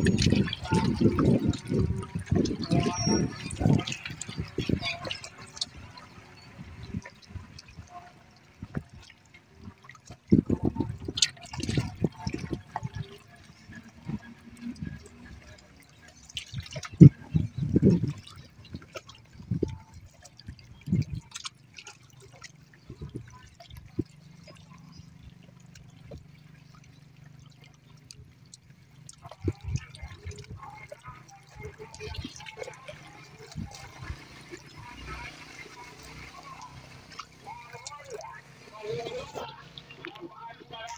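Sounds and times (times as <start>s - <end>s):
small sea waves splashing: 0.0s - 40.9s.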